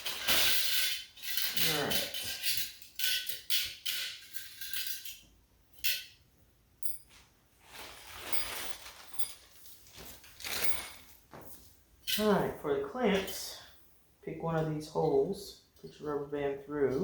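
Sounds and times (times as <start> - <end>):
metal clamps clinking: 6.8 - 7.2
handling rustle: 6.8 - 12.3.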